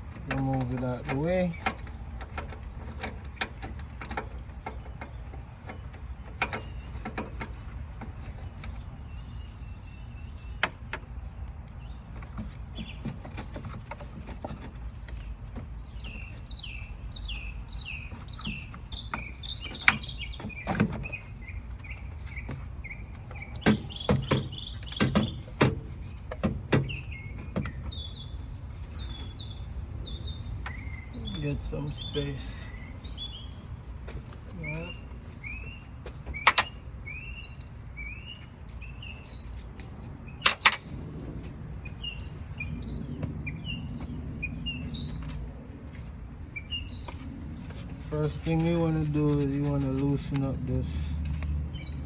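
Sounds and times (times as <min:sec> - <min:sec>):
small bird chirping: 0:08.3 - 0:33.8, 0:34.4 - 0:40.9, 0:41.8 - 0:45.4, 0:46.5 - 0:52.0.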